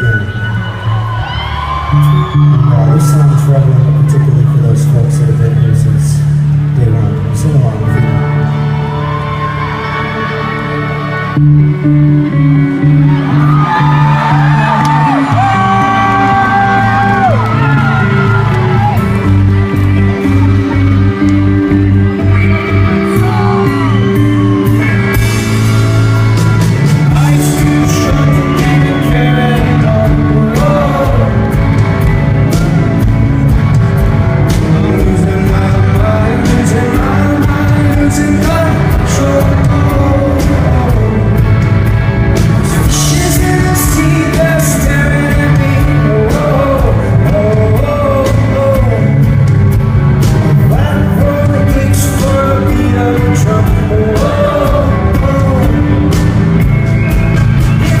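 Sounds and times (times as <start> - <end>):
rock band playing: 0.0 - 58.0
lead vocalist singing: 13.3 - 21.2, 21.8 - 33.1, 34.5 - 56.6, 57.4 - 58.0.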